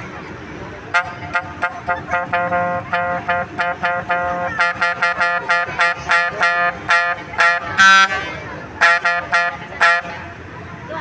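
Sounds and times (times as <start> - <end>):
multi-tone air horn tune: 0.9 - 10.3.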